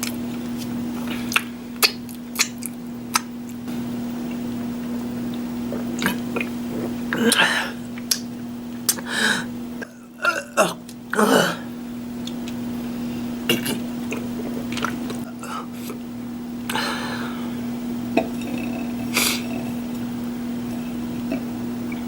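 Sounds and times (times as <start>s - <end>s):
person chewing: 0.0s - 3.6s, 4.2s - 9.1s, 13.5s - 16.0s
steady low hum: 0.0s - 22.0s
throat noises: 4.2s - 8.2s, 13.4s - 16.0s, 16.7s - 20.0s.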